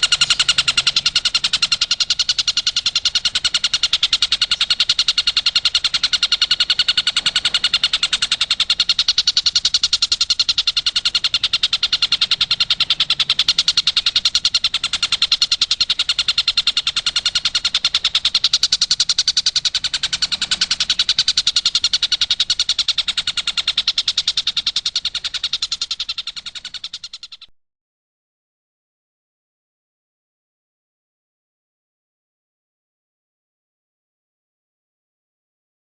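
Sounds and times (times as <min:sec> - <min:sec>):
kingfisher rattling call: 0:00.0 - 0:27.5.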